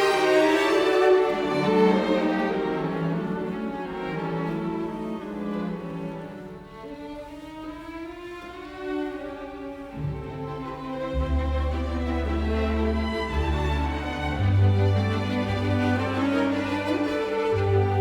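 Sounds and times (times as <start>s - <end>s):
bowed strings playing slow notes: 9.9s - 18.0s.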